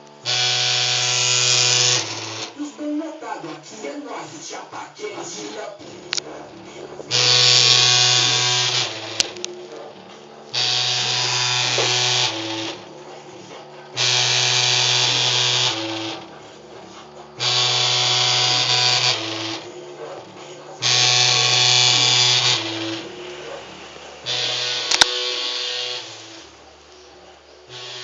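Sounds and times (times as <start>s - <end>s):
buzzing distorted low note: 6.2s - 19.8s.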